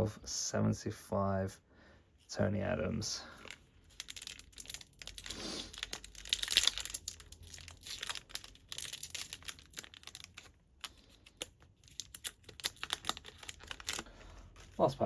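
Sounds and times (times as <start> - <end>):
wrapper crinkling: 3.3 - 15.0.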